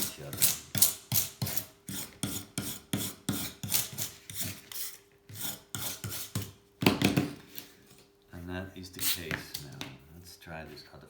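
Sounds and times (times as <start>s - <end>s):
hand file rasping on metal: 0.0s - 6.5s.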